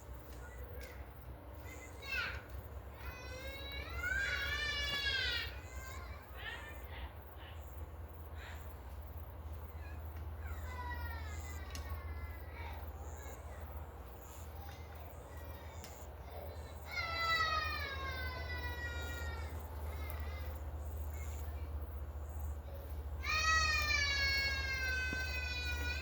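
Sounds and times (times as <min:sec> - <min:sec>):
steady low hum: 0:05.4 - 0:26.0.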